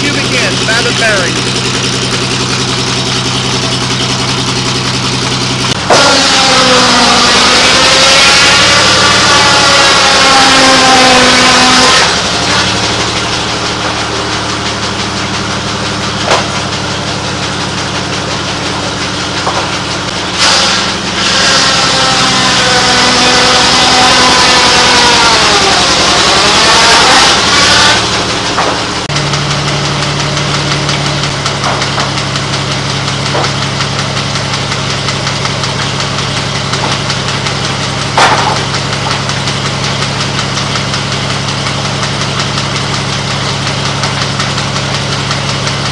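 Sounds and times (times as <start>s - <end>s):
saw cutting wood with high whine: 0.0s - 45.9s
sawmill engines running: 0.0s - 45.9s
knocks of wood handling: 16.2s - 16.9s, 19.3s - 19.9s, 28.4s - 28.9s, 30.9s - 40.8s.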